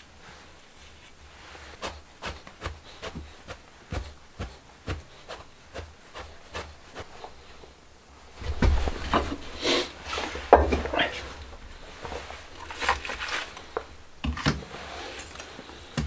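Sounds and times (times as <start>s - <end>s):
scraping on wood: 0.8s - 7.8s.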